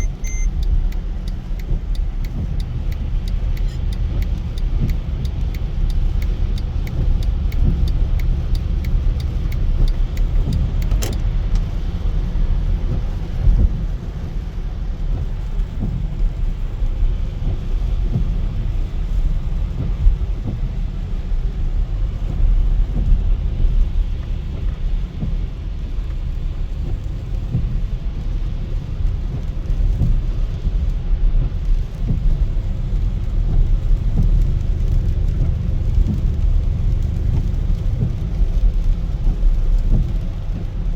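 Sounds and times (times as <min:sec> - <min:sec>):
sharp click: 0:00.0 - 0:11.3
light quick ticks: 0:00.0 - 0:11.9
engine and tyres on wet pavement: 0:00.0 - 0:40.9.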